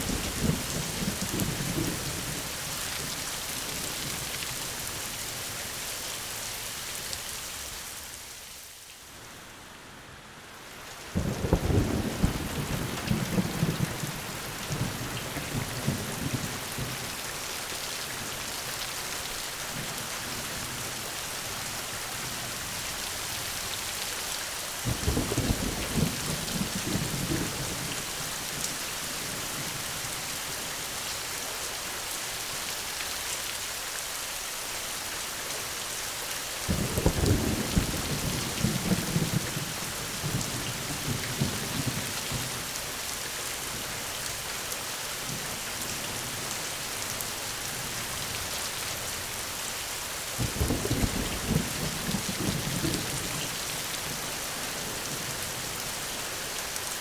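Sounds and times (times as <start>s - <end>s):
steady rain falling: 0.0s - 57.0s
thunder rumbling: 36.7s - 42.4s.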